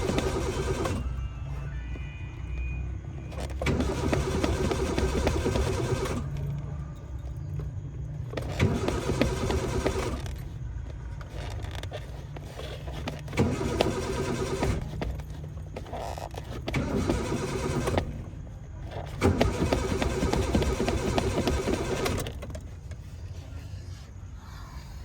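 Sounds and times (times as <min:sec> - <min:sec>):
car starter cranking engine: 0:00.0 - 0:01.8, 0:03.2 - 0:07.3, 0:08.2 - 0:22.8.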